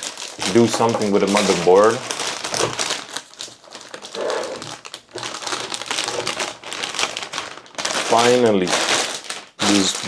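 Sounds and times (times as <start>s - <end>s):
packaging crinkling and rustling: 0.0s - 10.0s.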